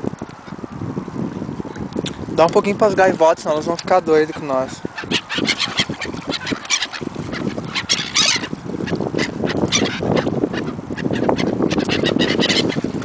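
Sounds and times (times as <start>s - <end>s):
flock of birds squawking: 4.3s - 12.9s.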